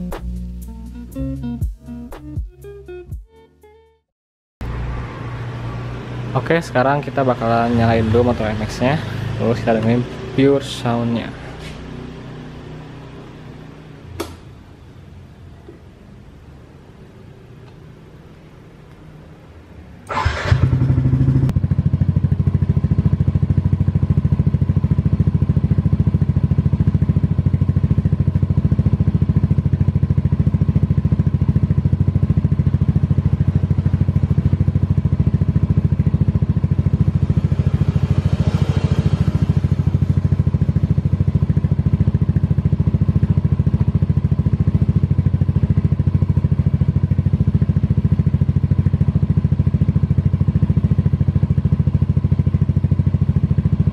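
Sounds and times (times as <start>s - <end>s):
scooter engine starting and idling: 20.0s - 53.9s.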